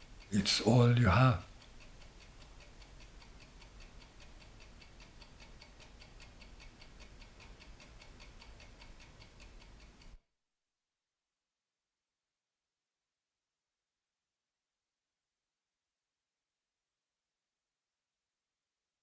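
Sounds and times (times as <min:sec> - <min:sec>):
mechanical watch ticking: 0:00.0 - 0:10.2.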